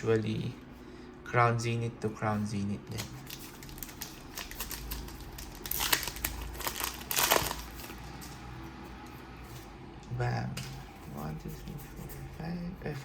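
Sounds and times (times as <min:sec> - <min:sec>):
foil wrapper crinkling: 0:02.9 - 0:08.3.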